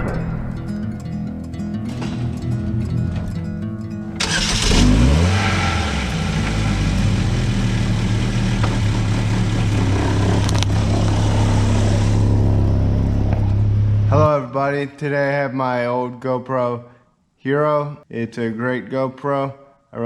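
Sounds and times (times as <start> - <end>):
background music: 0.0 - 6.1
vehicle engine starting and idling: 0.0 - 14.3.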